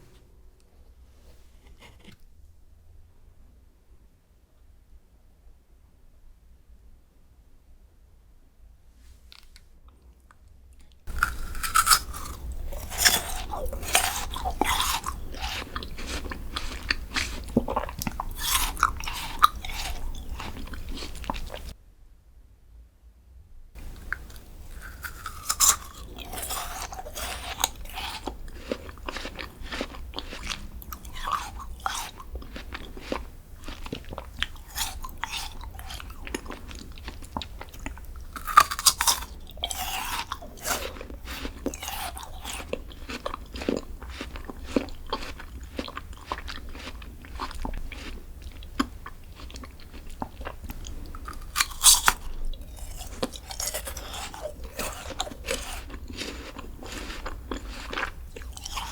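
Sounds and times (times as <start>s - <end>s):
crackling chewing: 10.8s - 21.8s, 23.8s - 58.9s
crunching bites: 11.1s - 21.7s, 23.8s - 58.9s.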